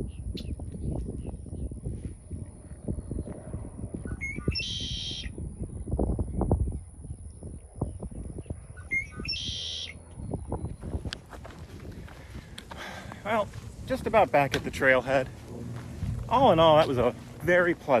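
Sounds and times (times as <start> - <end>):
bird call with buzzy trill: 4.1 - 5.3, 8.8 - 10.0
footsteps on gravel trail: 10.8 - 18.0.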